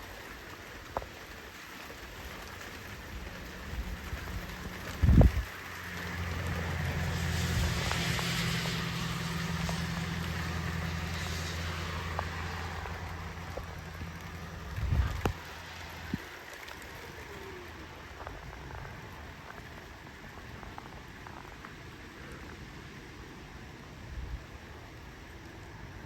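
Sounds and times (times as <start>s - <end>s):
storm wind and rain: 0.0s - 26.0s
low rumble: 3.2s - 16.4s.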